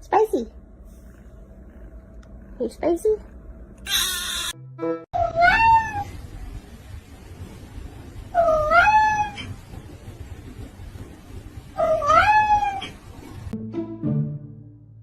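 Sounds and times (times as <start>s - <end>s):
cat meowing: 3.9s - 4.6s, 5.2s - 6.1s, 8.4s - 9.6s, 11.8s - 13.0s
music: 4.6s - 5.2s, 13.6s - 15.0s.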